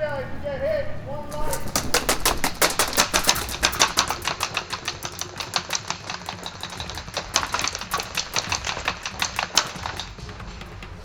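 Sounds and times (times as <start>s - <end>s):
footsteps crunching on ground: 0.0s - 4.2s.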